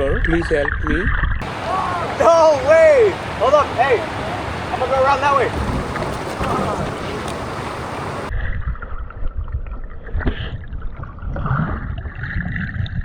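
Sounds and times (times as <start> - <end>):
faint knocks: 1.4 - 8.3
low rumbling on microphone: 1.4 - 8.3
river water flowing: 1.4 - 8.3.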